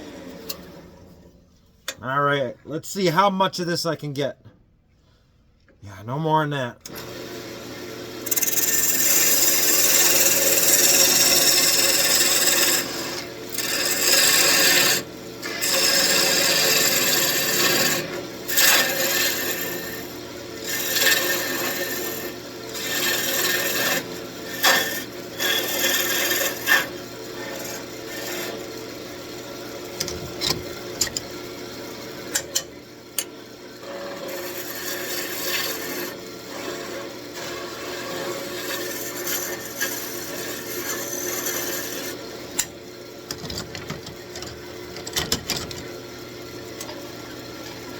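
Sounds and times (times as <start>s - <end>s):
turning tool cutting wood: 6.8s - 45.9s
lathe humming: 8.2s - 31.4s, 32.0s - 42.7s.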